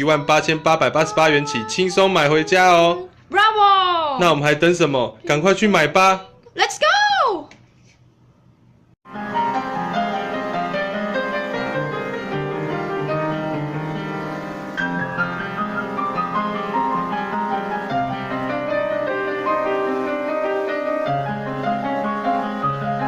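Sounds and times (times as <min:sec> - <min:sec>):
piano playing flowing passage: 0:09.1 - 0:23.0.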